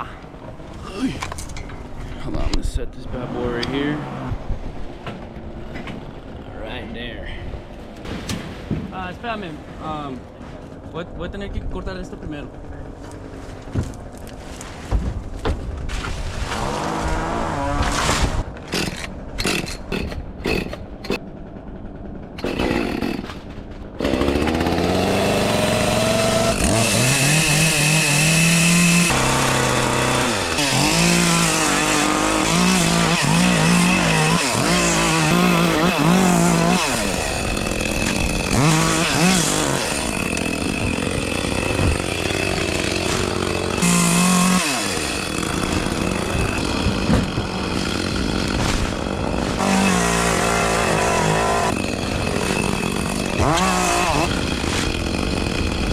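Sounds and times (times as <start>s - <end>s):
chainsaw cutting branches: 13.1s - 21.2s, 22.3s - 55.9s.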